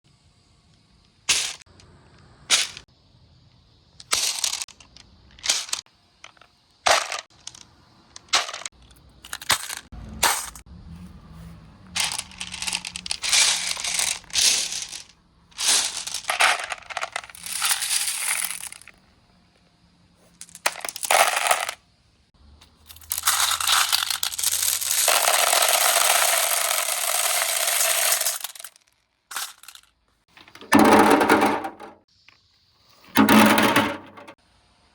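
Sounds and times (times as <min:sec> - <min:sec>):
marbles clicking: 0:12.0 - 0:18.9, 0:20.3 - 0:21.8, 0:22.9 - 0:29.9
marbles rattling down a run: 0:12.0 - 0:18.9, 0:20.4 - 0:21.8, 0:22.9 - 0:29.9.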